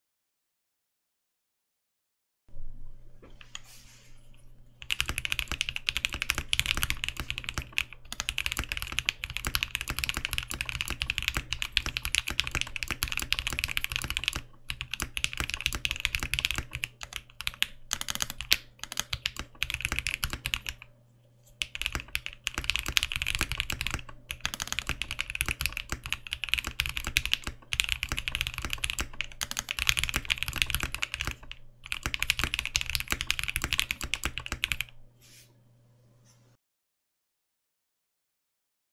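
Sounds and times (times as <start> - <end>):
typing on mechanical keyboard: 4.8 - 20.9, 21.6 - 35.0.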